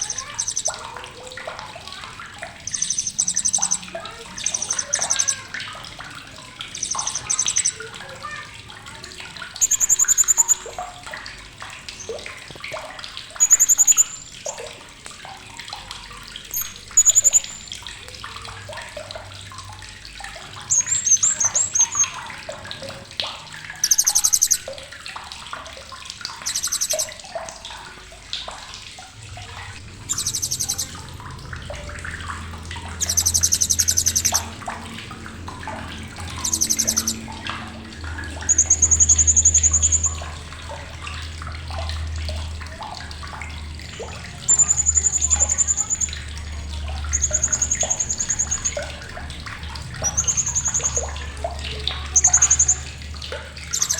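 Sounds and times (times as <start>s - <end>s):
parrot chattering trills: 0.0s - 1.1s, 2.6s - 5.8s, 6.5s - 8.6s, 9.6s - 10.8s, 13.4s - 14.4s, 16.5s - 17.7s, 20.6s - 22.2s, 23.8s - 24.7s, 26.4s - 27.2s, 30.1s - 31.0s, 33.0s - 34.6s, 36.3s - 37.3s, 38.4s - 40.2s, 44.4s - 46.1s, 47.0s - 48.8s, 49.9s - 51.4s
soft bird chirps: 0.0s - 14.7s, 16.5s - 18.1s, 20.5s - 22.6s, 23.7s - 24.9s, 26.3s - 28.0s, 29.4s - 34.7s, 35.8s - 40.4s, 44.4s - 49.1s, 49.8s - 53.0s, 53.6s - 53.9s.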